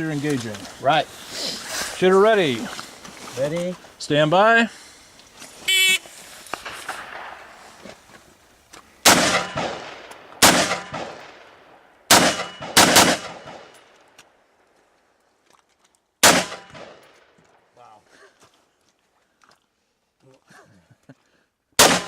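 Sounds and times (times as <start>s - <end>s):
rifle shots echoing: 6.6s - 7.8s, 9.0s - 13.9s, 16.2s - 17.3s, 21.8s - 22.0s.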